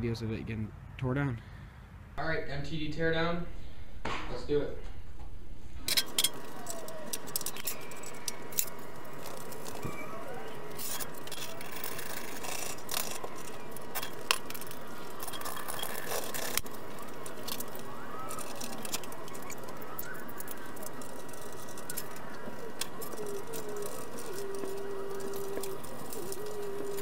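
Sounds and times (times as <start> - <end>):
tools and parts clicking and rattling: 5.9 - 27.0.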